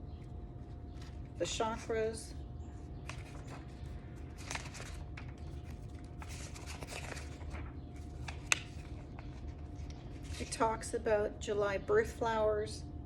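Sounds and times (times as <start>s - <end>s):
low background hum: 0.0s - 13.0s
paper pages rustling: 0.2s - 2.0s, 2.8s - 10.6s.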